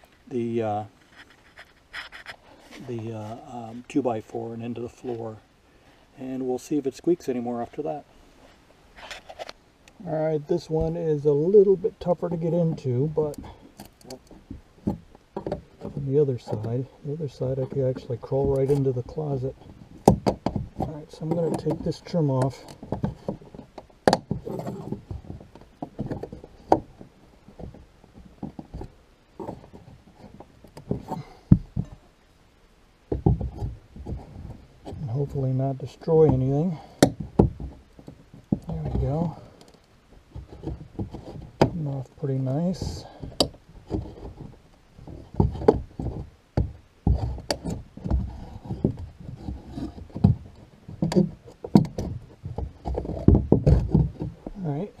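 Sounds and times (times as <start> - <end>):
wood knocks and taps: 12.7 - 16.8, 17.6 - 32.0, 33.1 - 35.1, 36.2 - 41.8, 42.7 - 54.6.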